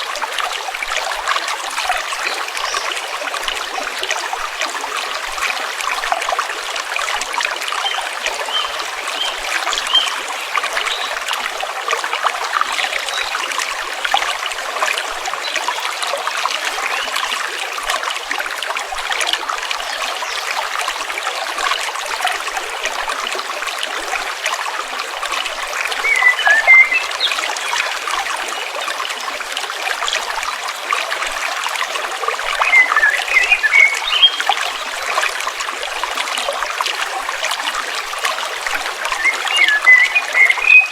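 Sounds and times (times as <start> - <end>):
stream babbling over stones: 0.0 - 40.9
birds chirping: 26.0 - 27.7, 32.6 - 34.6, 39.2 - 40.9.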